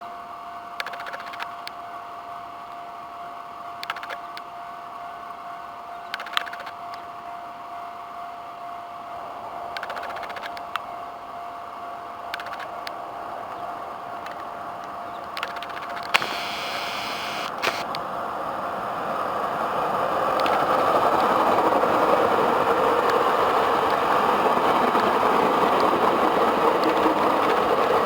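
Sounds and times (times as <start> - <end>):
sharp clicking bursts: 0.8 - 1.8, 3.8 - 4.5, 6.1 - 7.0, 9.8 - 10.9, 12.3 - 13.0, 14.2 - 18.0, 20.3 - 28.0
level crossing warning alarm: 16.2 - 17.8.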